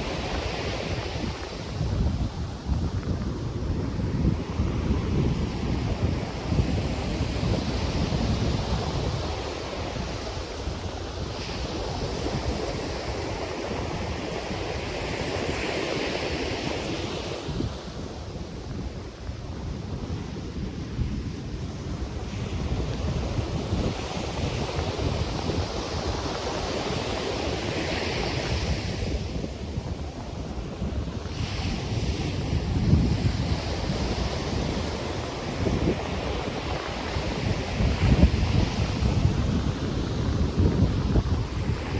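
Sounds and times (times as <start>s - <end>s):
ocean surf washing onto beach: 0.0s - 41.9s
wind buffeting microphone: 0.0s - 41.9s.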